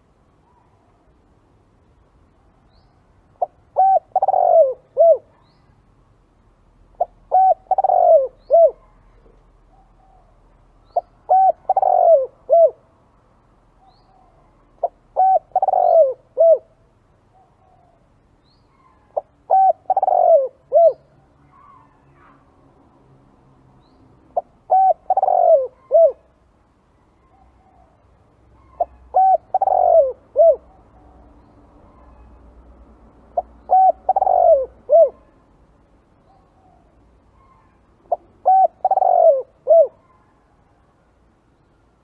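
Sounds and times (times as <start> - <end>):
dove cooing: 3.4 - 5.6, 6.9 - 9.0, 9.7 - 12.8, 13.9 - 16.8, 18.8 - 21.8, 24.3 - 26.3, 28.6 - 30.8, 33.4 - 35.4, 36.3 - 40.4.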